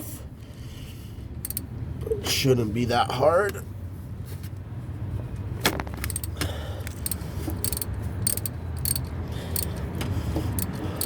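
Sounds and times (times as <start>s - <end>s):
socket wrench metallic clicks: 1.4s - 1.7s, 6.0s - 9.8s, 10.5s - 11.0s.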